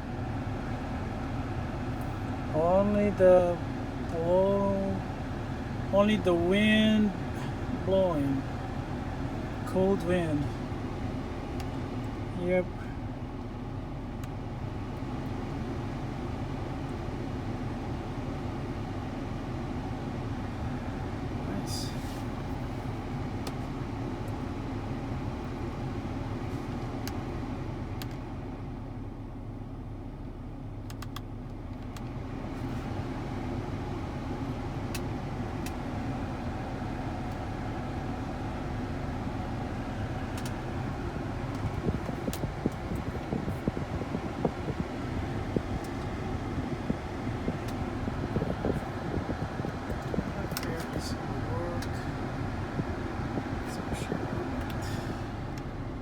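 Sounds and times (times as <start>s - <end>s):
blower fan blowing air: 0.0s - 29.6s, 30.3s - 56.0s
low rumble: 39.3s - 55.5s.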